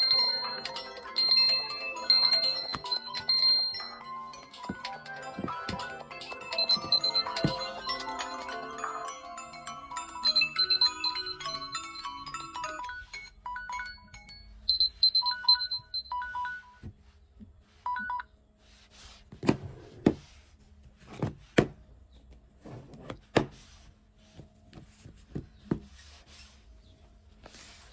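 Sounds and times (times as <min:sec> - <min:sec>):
smartphone alarm beeps: 0:06.3 - 0:08.3, 0:10.1 - 0:16.9, 0:17.8 - 0:18.3.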